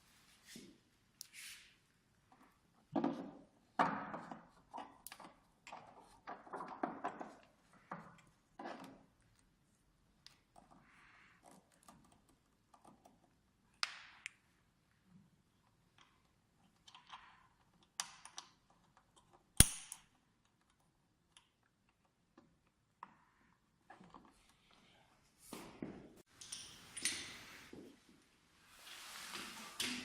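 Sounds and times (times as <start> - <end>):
loud sharp snap: 19.6 - 20.0.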